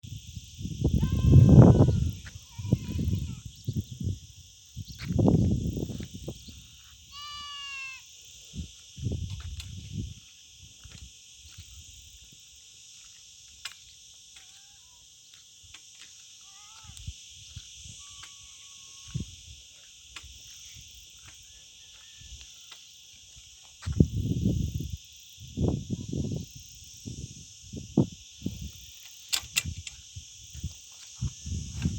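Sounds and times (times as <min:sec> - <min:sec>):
high-pitched insect chorus: 0:00.0 - 0:31.9
bleat-like animal call: 0:01.0 - 0:03.4, 0:07.1 - 0:08.1, 0:18.0 - 0:19.2.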